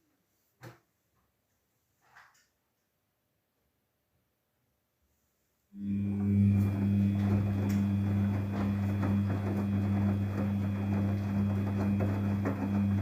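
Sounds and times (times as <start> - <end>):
washing machine pump hum: 5.8 - 13.0.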